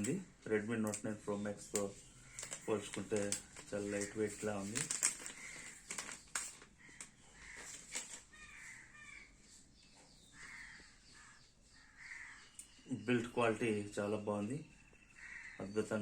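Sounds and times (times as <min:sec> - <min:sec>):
faint bird calls: 0:01.3 - 0:16.0
packaging clicks: 0:01.7 - 0:08.3.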